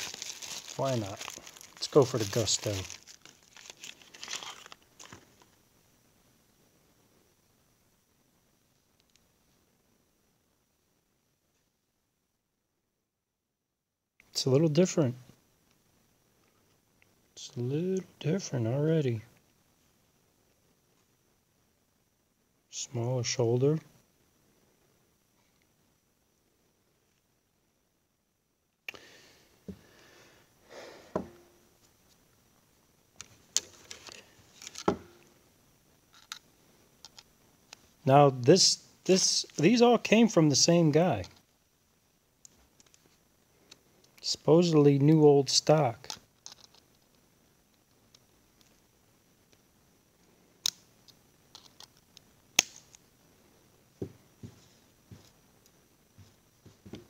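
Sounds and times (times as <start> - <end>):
small metal parts clicking and knocking: 46.1 - 47.2.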